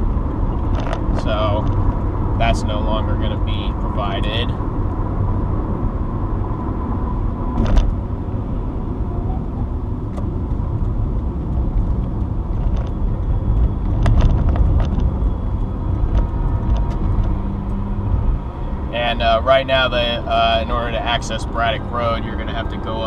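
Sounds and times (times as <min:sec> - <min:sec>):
car cabin road rumble: 0:00.0 - 0:23.0
small clicks and rattles: 0:00.7 - 0:01.8, 0:11.5 - 0:17.8.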